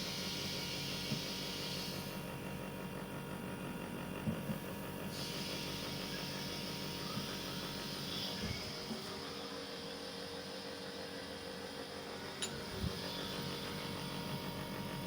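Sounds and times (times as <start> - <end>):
air conditioner humming: 3.3 - 15.0.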